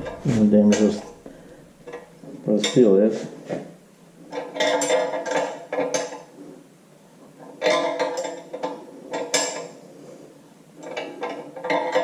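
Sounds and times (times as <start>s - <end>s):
metal clinking and scraping: 4.2s - 6.3s, 7.4s - 9.8s, 10.8s - 12.0s.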